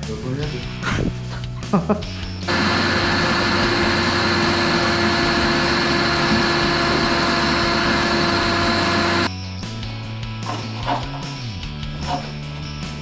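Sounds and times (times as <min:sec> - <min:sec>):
wet vacuum whining: 0:02.5 - 0:09.3.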